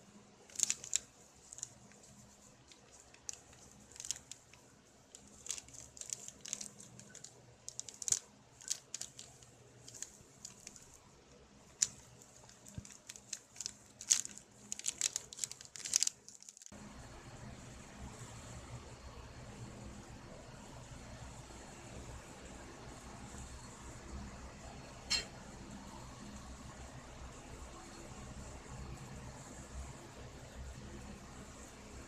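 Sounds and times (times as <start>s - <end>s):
packaging crinkling and tearing: 0.5s - 11.0s, 11.7s - 16.7s.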